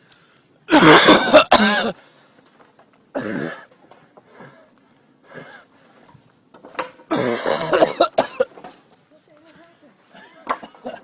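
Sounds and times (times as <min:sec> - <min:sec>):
person coughing: 0:00.7 - 0:02.0, 0:07.1 - 0:08.5.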